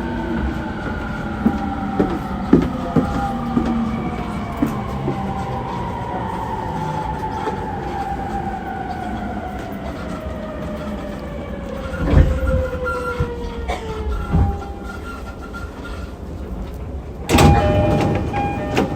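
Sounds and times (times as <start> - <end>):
wheel and rail rumble: 0.0 - 18.9
electric train motor whine: 17.3 - 18.9
heavy thumps: 17.3 - 18.9.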